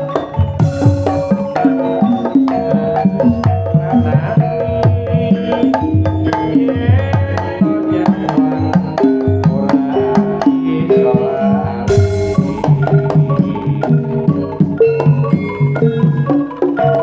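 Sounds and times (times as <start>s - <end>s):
hand drums beating quick rhythm: 0.0s - 7.5s, 11.8s - 17.0s
pitched gamelan percussion melody: 0.0s - 17.0s.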